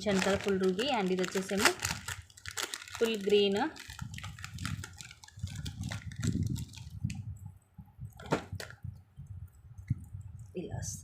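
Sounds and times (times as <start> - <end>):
rustling and bumping of packaging: 0.0 - 7.1, 8.2 - 8.8.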